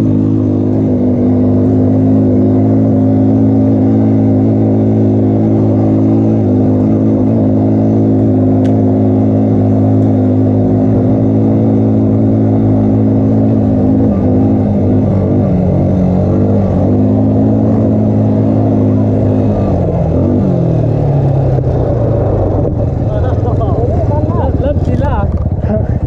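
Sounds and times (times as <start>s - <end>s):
quad bike engine running: 0.0s - 26.0s
sharp click: 8.6s - 8.8s.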